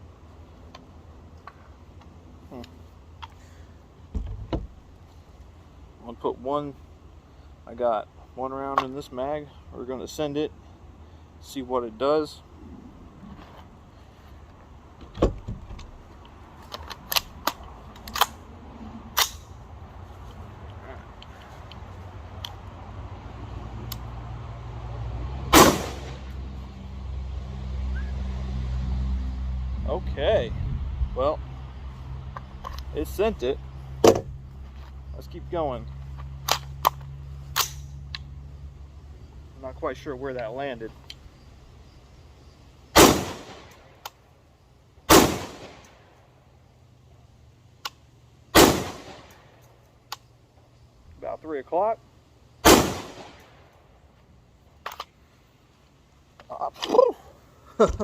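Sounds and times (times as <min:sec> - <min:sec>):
rifle shot with echo: 0:25.5 - 0:26.2, 0:43.0 - 0:43.7, 0:45.1 - 0:45.8, 0:48.6 - 0:49.3, 0:52.6 - 0:53.4
faint sharp clicks: 0:49.3 - 0:50.3.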